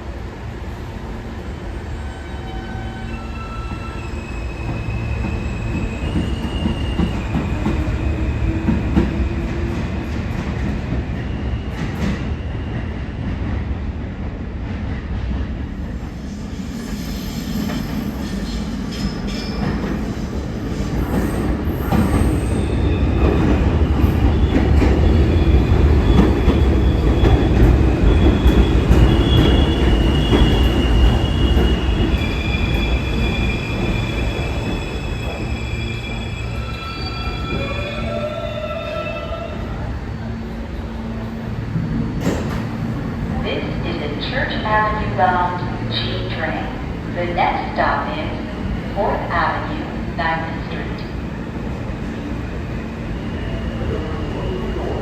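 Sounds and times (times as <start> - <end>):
subway train rumbling: 0.0 - 55.0
train wheels squealing: 2.0 - 8.3, 16.0 - 40.8, 53.1 - 55.0.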